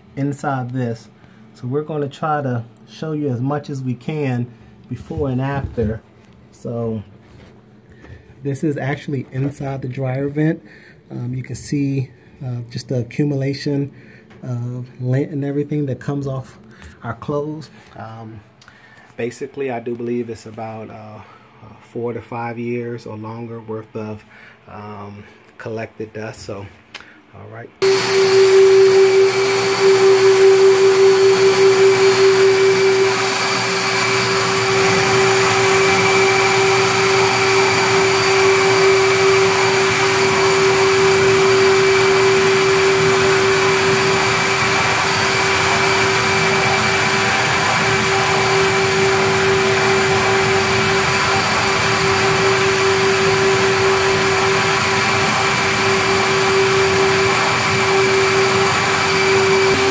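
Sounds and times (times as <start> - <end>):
vacuum droning: 27.8 - 59.9.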